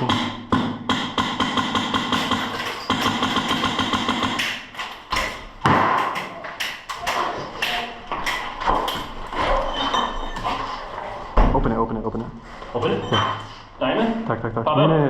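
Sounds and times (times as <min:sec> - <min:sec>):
airsoft guns firing: 0:00.0 - 0:04.8.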